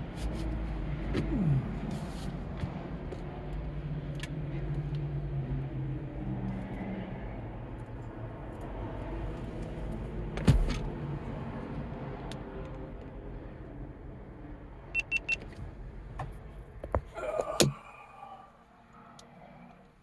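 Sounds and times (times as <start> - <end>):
car engine running at low revs: 0.0 - 12.0
sharp thump: 10.4 - 10.9.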